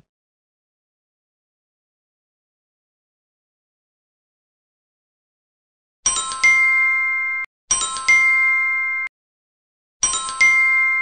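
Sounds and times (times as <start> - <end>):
bright chime dings: 10.0 - 11.0.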